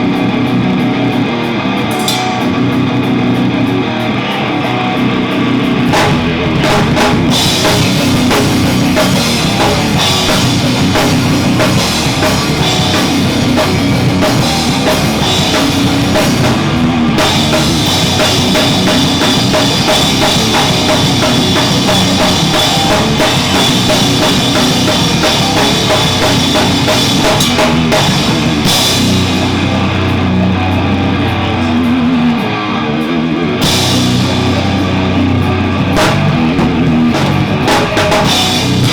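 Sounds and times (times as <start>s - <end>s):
drum kit: 0.0s - 38.9s
guitar: 0.0s - 38.9s.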